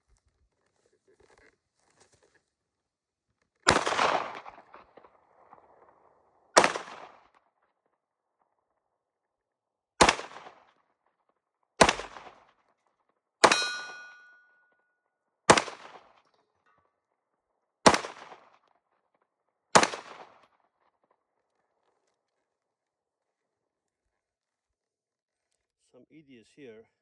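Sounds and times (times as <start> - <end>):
pistol shots: 3.7 - 4.5, 6.6 - 7.1, 10.0 - 10.5, 11.8 - 12.3, 13.4 - 14.4, 15.5 - 16.0, 17.9 - 18.4, 19.8 - 20.2
metallic ring: 13.4 - 14.6.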